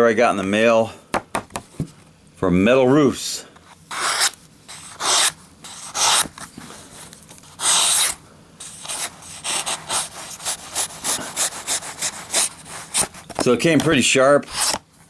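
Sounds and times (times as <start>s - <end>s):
knife slicing cardboard: 3.9s - 6.4s, 7.6s - 13.9s.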